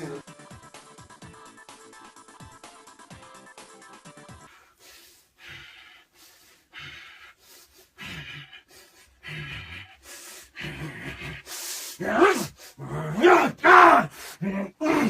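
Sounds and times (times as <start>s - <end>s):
person panting heavily: 4.4s - 13.2s, 14.0s - 15.0s
person grunting: 10.6s - 15.0s.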